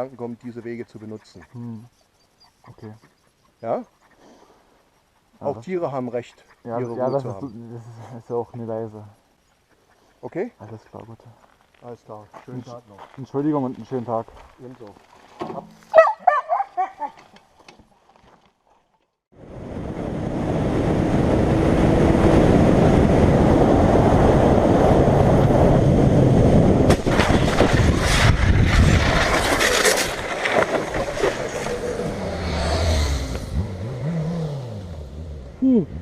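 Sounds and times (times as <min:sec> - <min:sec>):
wind rush: 0:19.4 - 0:33.7.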